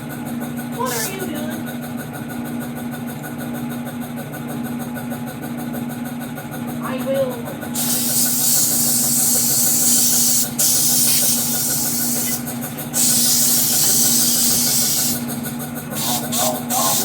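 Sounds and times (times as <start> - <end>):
lawn mower engine running: 0.0 - 17.0
loud hisses: 7.8 - 17.0.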